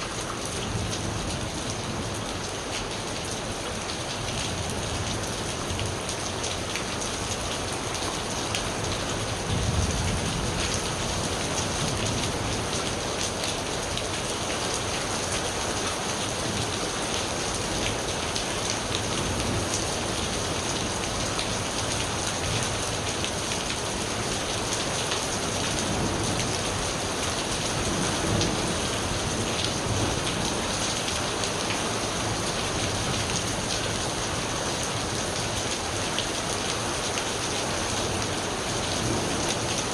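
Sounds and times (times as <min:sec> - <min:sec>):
rain falling: 0:00.0 - 0:39.9.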